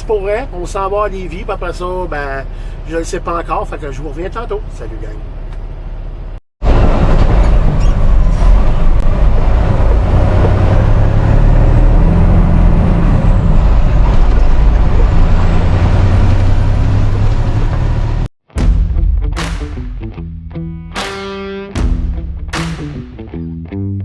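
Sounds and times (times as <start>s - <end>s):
diesel truck engine humming: 4.6s - 18.3s.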